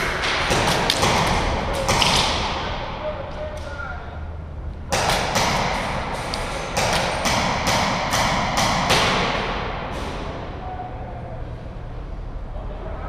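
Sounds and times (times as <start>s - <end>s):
airsoft guns firing: 0.0s - 2.9s, 4.9s - 9.8s.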